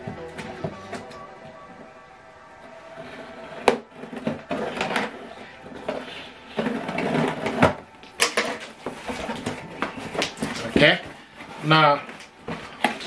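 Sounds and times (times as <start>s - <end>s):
cardboard and wrapping rustling: 2.6s - 13.0s.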